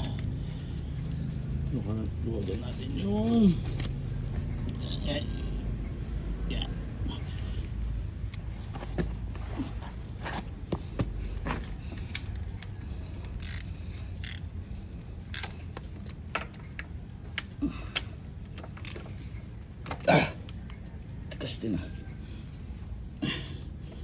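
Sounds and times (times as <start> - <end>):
wrench clicking and clinking: 11.4 - 18.0.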